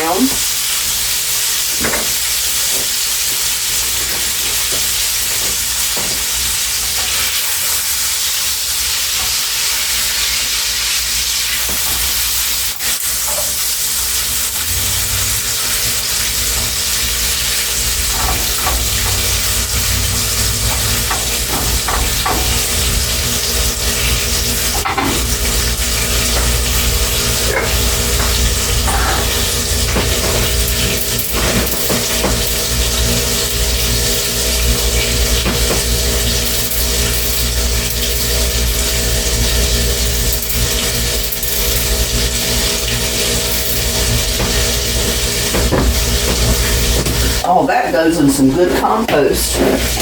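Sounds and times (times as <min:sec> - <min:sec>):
food sizzling in a frying pan: 0:00.0 - 0:47.4, 0:48.2 - 0:50.0
utensil scraping a pan: 0:24.0 - 0:32.5, 0:48.2 - 0:50.0.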